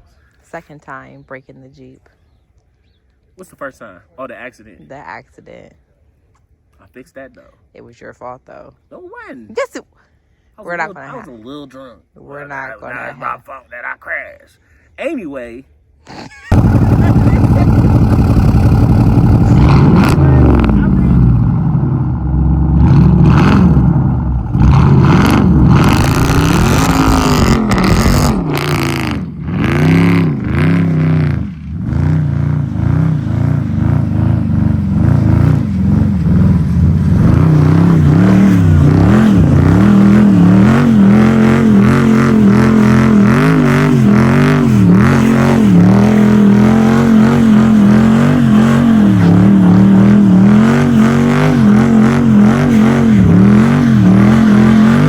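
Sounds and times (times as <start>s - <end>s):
car engine revving hard: 16.5s - 55.0s.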